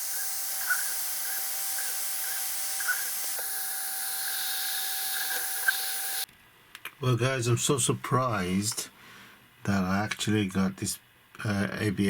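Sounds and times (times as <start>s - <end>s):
soft chirps: 0.0s - 3.4s, 4.0s - 6.2s
printer fans humming: 0.0s - 6.3s.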